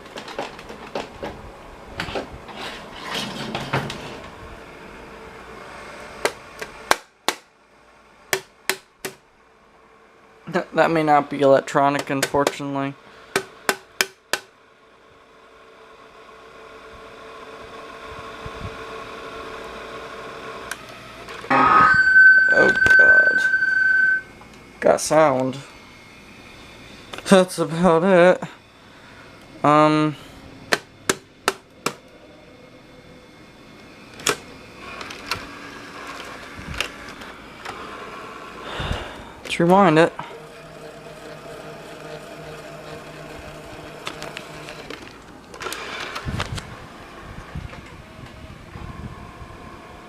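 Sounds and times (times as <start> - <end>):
faint hum: 0.0 - 50.0
faint whine: 20.5 - 40.4.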